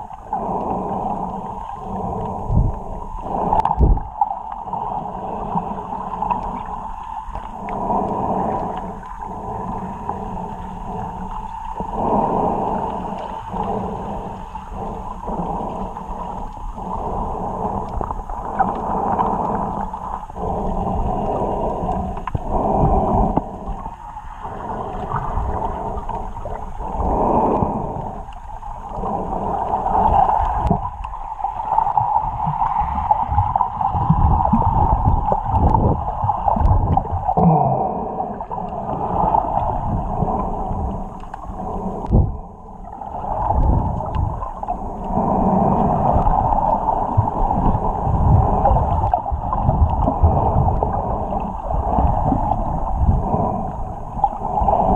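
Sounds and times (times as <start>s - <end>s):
muffled water sloshing: 0.0s - 54.9s.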